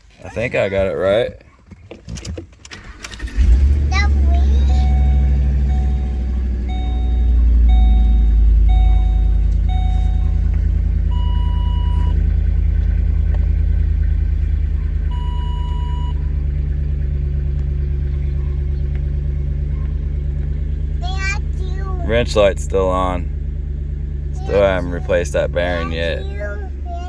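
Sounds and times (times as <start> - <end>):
car engine idling: 2.7 - 27.0
dashboard chime beeps: 4.6 - 10.5, 11.1 - 12.2, 15.1 - 16.2.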